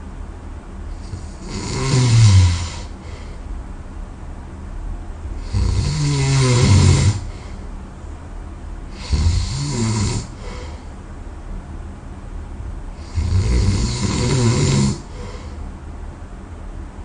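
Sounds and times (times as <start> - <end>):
person snoring loudly: 1.0 - 2.9, 5.4 - 7.4, 8.9 - 10.7, 13.0 - 15.5.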